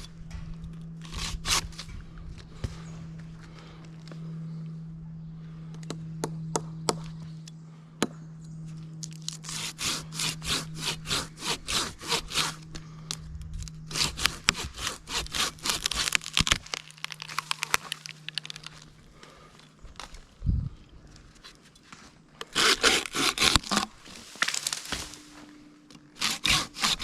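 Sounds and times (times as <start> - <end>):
low hum: 0.0 - 27.0
hand saw cutting wood: 1.0 - 1.9, 9.3 - 12.7, 13.9 - 16.6, 22.4 - 24.0, 26.2 - 27.0.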